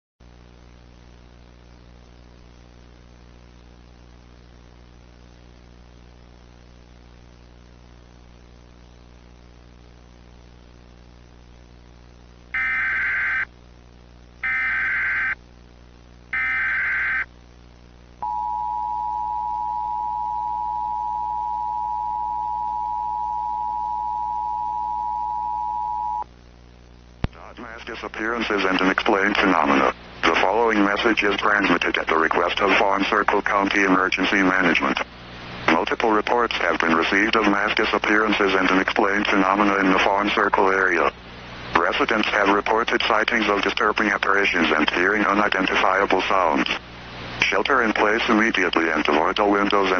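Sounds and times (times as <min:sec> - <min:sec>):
low hum: 0:17.6 - 0:31.0.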